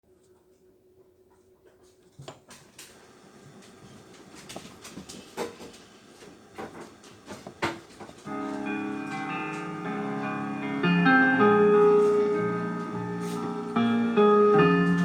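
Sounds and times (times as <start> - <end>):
irregular knocks and clicks: 4.2 - 8.3.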